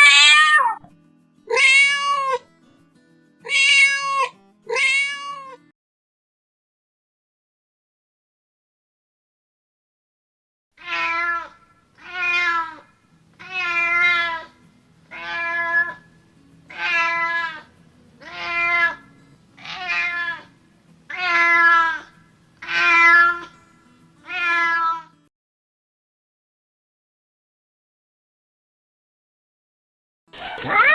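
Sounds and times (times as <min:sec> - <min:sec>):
cat meowing: 0:00.0 - 0:00.9, 0:01.5 - 0:02.4, 0:03.5 - 0:05.7, 0:10.8 - 0:14.5, 0:15.1 - 0:16.0, 0:16.7 - 0:20.5, 0:21.1 - 0:23.6, 0:24.2 - 0:25.2, 0:30.4 - 0:30.9.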